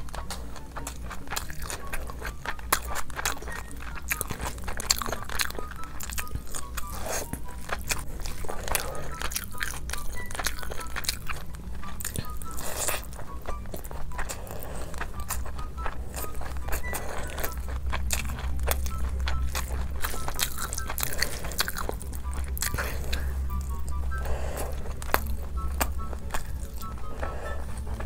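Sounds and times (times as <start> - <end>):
person chewing crunchy food: 0.0 - 28.0.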